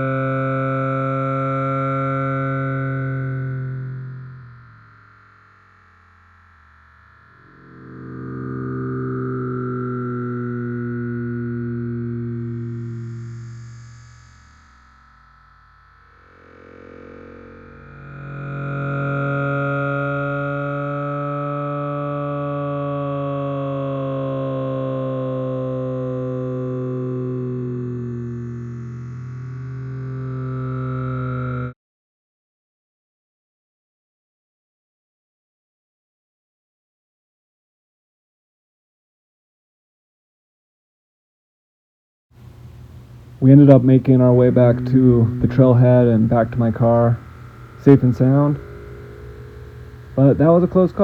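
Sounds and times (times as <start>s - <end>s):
synthesizer pad chords: 0.0s - 31.8s, 42.4s - 51.0s.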